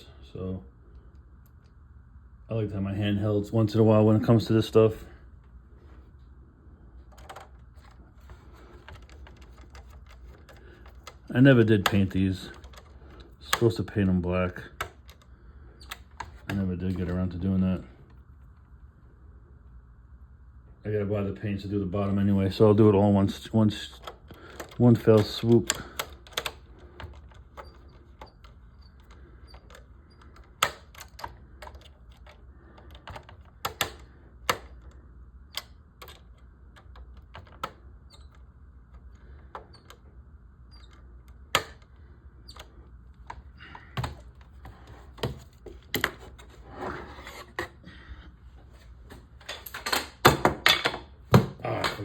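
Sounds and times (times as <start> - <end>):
faint low hum: 0.0 - 52.0
plastic parts clicking: 23.9 - 35.0.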